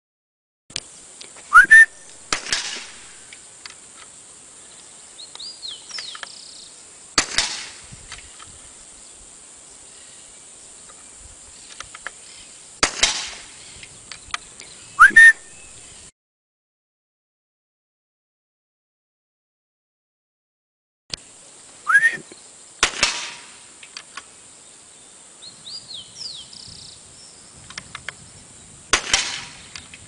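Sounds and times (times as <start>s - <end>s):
rising whistle-like chirp: 1.5s - 2.1s, 14.9s - 15.8s, 21.9s - 22.3s
suppressed gunshots: 2.3s - 3.2s, 7.2s - 7.8s, 12.8s - 13.5s, 22.8s - 23.6s, 28.9s - 29.7s.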